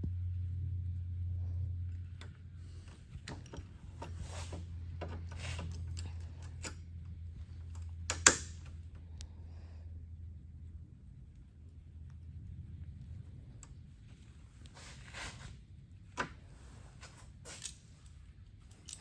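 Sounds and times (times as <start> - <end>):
steady low hum: 0.0 - 19.0
tools and parts rattling: 17.0 - 19.0.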